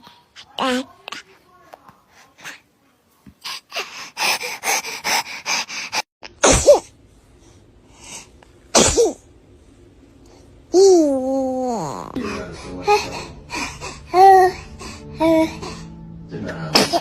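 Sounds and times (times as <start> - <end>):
baby coughing: 6.4 - 6.9, 8.7 - 9.2, 16.7 - 17.0
baby sneezing: 6.4 - 6.9, 8.7 - 9.2.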